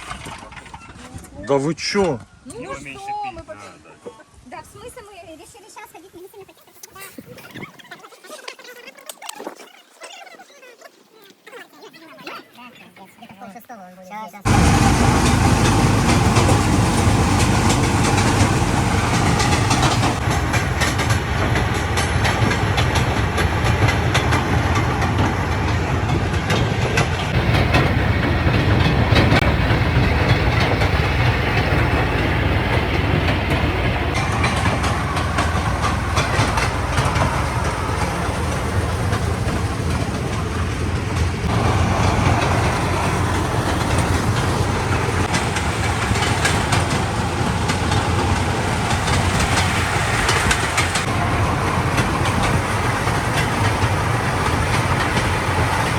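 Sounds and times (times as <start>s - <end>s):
trailer rattling and clattering: 0.0s - 2.9s, 14.5s - 55.9s
vehicle engine running: 14.5s - 55.9s.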